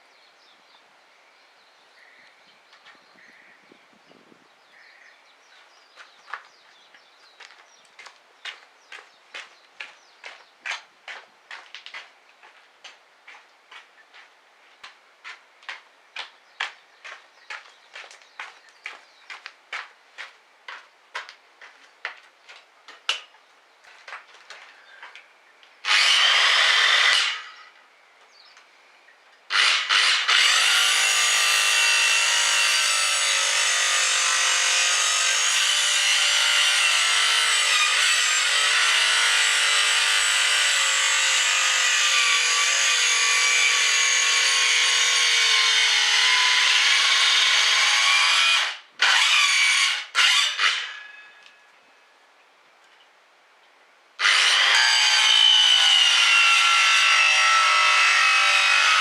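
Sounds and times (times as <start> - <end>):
small motor tool whining: 25.8 - 27.7, 29.5 - 51.4, 54.2 - 59.0.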